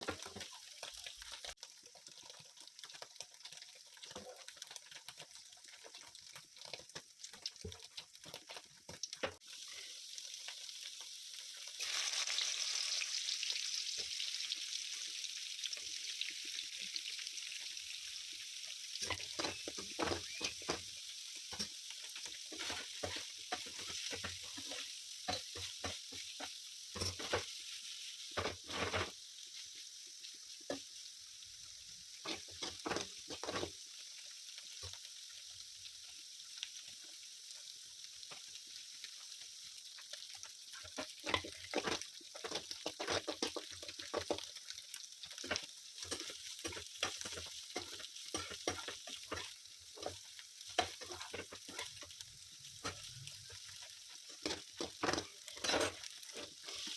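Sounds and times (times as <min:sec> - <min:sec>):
food sizzling in a pan: 0:00.0 - 0:56.9
spatula clattering against pan: 0:45.4 - 0:52.1.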